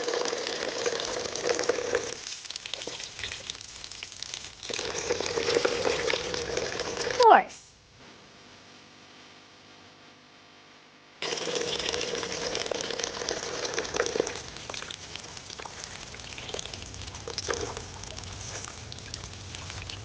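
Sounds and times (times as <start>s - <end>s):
crinkling and crackling: 0.0s - 7.5s, 11.2s - 20.0s.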